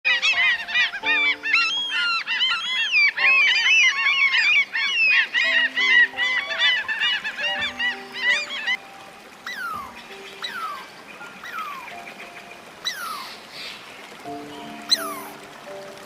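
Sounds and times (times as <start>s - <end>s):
background music: 0.1s - 2.3s, 3.2s - 4.0s, 5.4s - 13.1s, 14.2s - 16.0s
many birds calling: 0.1s - 16.0s.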